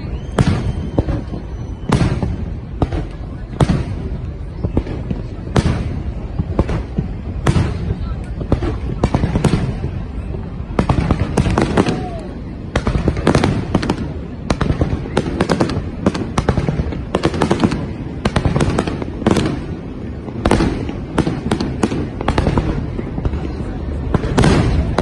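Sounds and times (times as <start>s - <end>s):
continuous low rumble: 0.0s - 25.0s
fireworks bangs and crackles: 0.0s - 25.0s.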